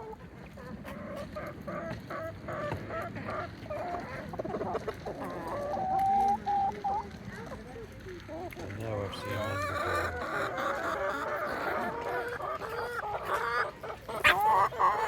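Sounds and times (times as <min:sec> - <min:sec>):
chickens clucking: 0:00.0 - 0:15.0
chicken long drawn-out call: 0:09.2 - 0:15.0.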